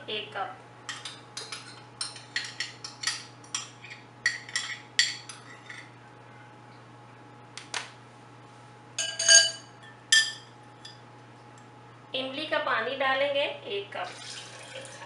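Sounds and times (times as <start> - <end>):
spoon clinking against cup: 9.0 - 11.0.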